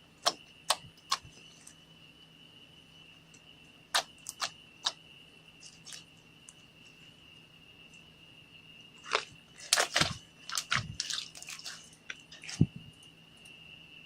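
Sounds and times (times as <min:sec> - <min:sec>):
slime squelching and popping: 0:00.2 - 0:01.4, 0:03.9 - 0:05.0, 0:09.0 - 0:12.8.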